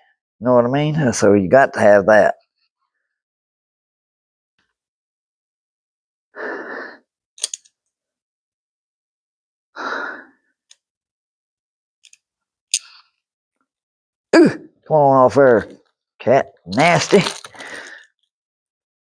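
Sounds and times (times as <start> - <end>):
man sighing heavily: 14.4 - 14.7, 17.5 - 18.1.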